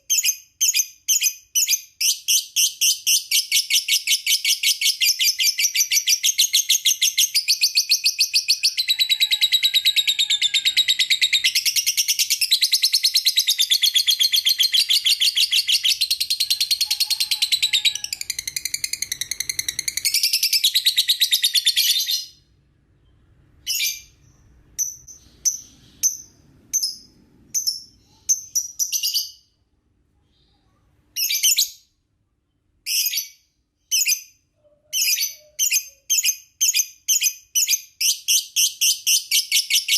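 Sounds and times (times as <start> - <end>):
bird chirps: 0.0 - 29.6.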